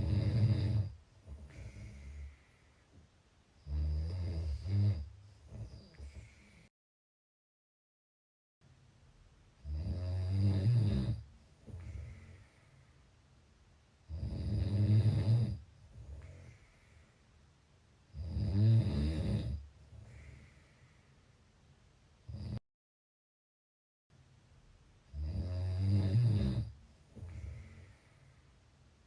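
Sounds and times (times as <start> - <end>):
person snoring: 0.0 - 2.6, 3.6 - 6.7, 9.6 - 12.6, 14.1 - 16.6, 18.1 - 20.6, 22.3 - 22.6, 25.1 - 28.1.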